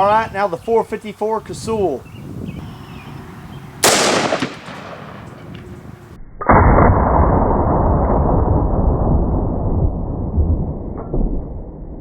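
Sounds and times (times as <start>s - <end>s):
muffled drawn-out rumble: 2.4s - 6.2s
revolver gunshot: 3.8s - 7.3s.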